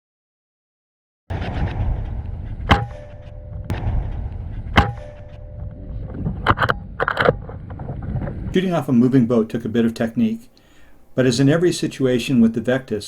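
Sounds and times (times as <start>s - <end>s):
low rumble: 1.3s - 8.6s
clicks and clatter: 6.0s - 8.3s.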